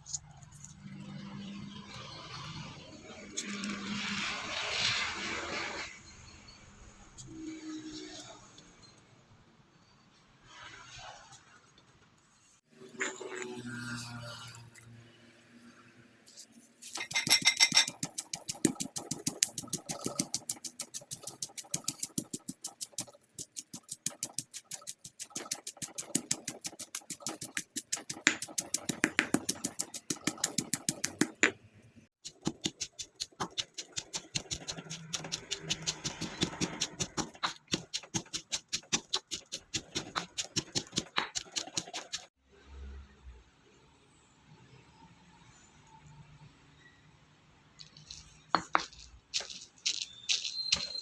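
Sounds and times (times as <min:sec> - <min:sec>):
pestle pounding in a mortar: 0:17.0 - 0:31.5, 0:32.2 - 0:42.3.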